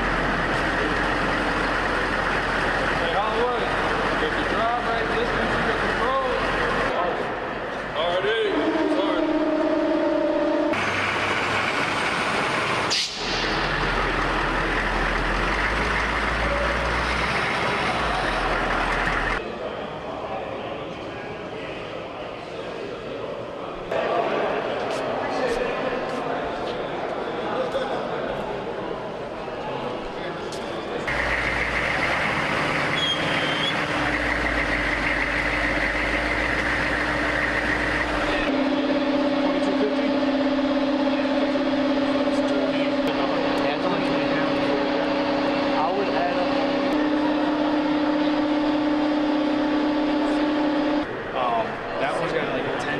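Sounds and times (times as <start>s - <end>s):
military vehicle engine: 0.0s - 20.5s, 30.7s - 52.6s
high whine: 31.1s - 51.5s.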